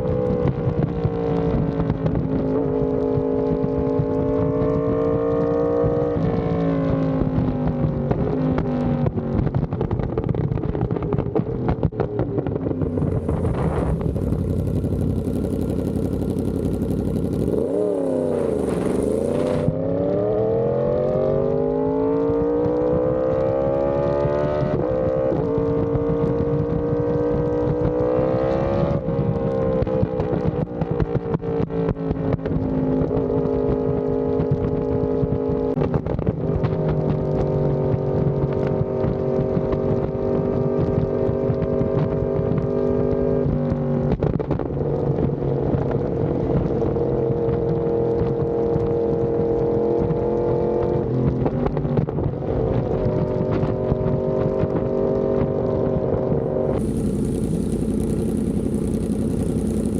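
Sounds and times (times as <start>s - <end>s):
motorcycle engine revving: 12.2s - 30.3s, 52.2s - 59.9s
wind rushing: 12.8s - 15.4s, 17.4s - 19.7s.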